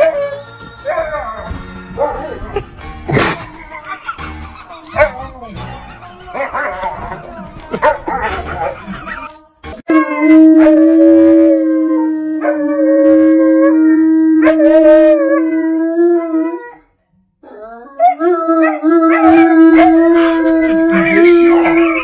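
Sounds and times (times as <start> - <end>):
husky howling: 9.9 - 16.8, 17.4 - 22.0.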